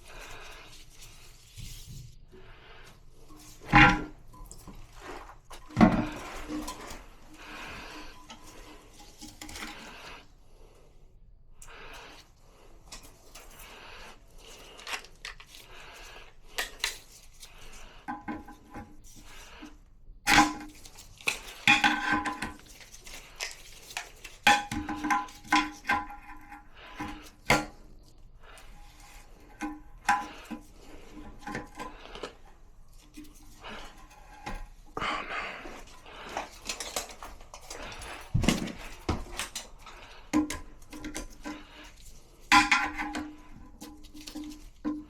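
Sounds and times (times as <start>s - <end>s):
hard objects clinking: 33.1s - 45.0s.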